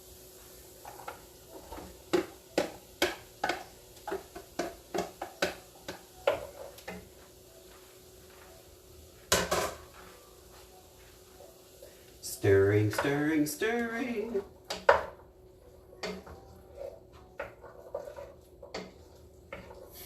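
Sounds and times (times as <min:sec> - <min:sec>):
spoon knocking on a pot: 0:01.7 - 0:07.0, 0:09.3 - 0:09.8, 0:14.7 - 0:15.2, 0:16.0 - 0:16.5.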